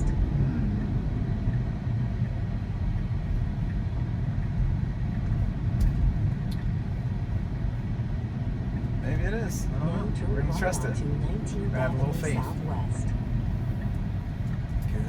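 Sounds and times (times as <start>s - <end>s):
road and tyre rumble in car: 0.0s - 15.0s.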